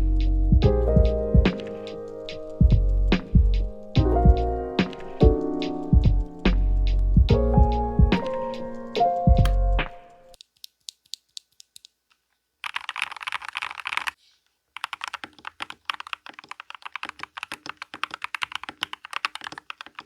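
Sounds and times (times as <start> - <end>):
music: 0.0 - 10.4
typing on mechanical keyboard: 12.6 - 14.2, 14.8 - 20.0.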